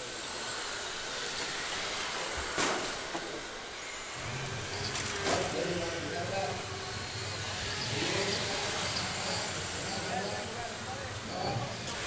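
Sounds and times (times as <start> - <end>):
electric race cars whirring: 0.0 - 12.0.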